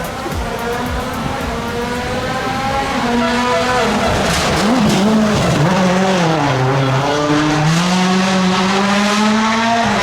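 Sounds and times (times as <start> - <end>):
rally car engine revving: 0.0 - 10.0.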